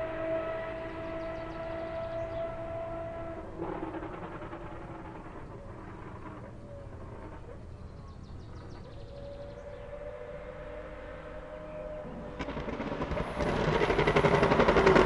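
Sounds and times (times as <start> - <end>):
racing car engine note: 0.0 - 3.8, 9.6 - 12.7.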